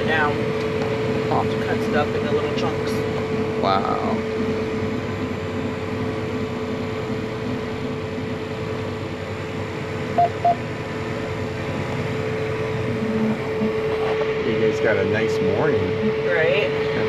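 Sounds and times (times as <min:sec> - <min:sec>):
tractor engine and fan droning: 0:00.0 - 0:17.0
short electronic beeps: 0:10.2 - 0:10.6.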